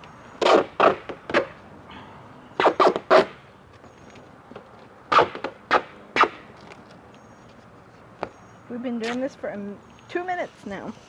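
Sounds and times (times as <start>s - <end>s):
duct tape ripping off the roll: 5.1s - 6.4s.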